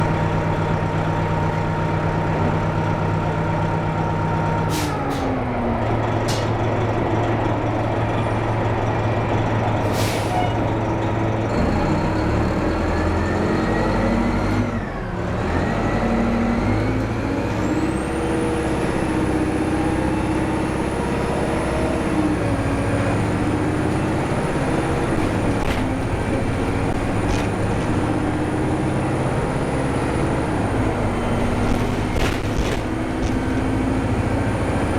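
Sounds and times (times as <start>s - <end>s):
bus diesel engine accelerating: 0.0s - 34.9s
short sharp air hisses: 9.9s - 10.5s.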